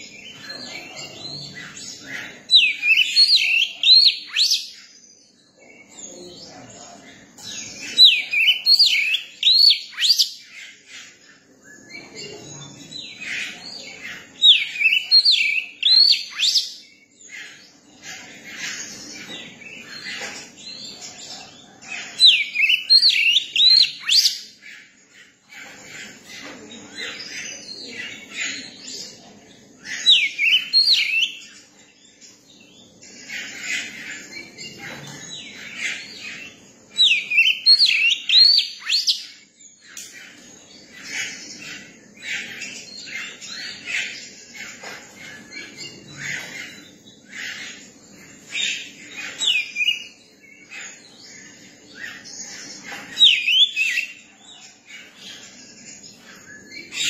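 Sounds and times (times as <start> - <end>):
soft bird chattering: 5.8 - 57.0.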